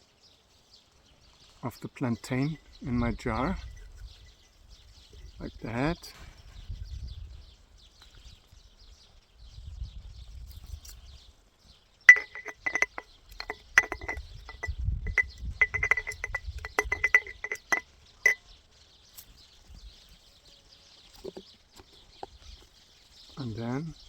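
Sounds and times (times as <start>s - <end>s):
glass jar clinking: 12.1s - 18.5s.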